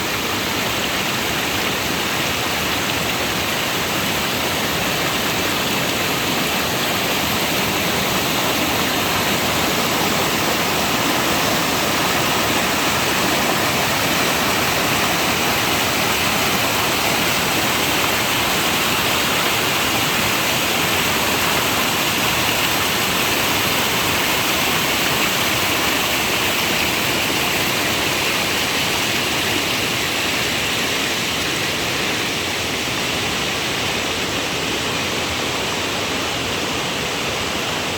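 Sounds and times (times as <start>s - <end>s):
rain falling in forest: 0.0s - 37.9s.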